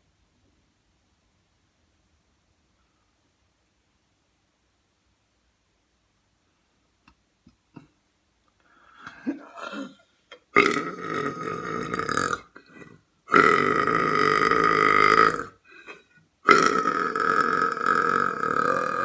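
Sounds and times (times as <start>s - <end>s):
person belching: 9.1s - 19.0s.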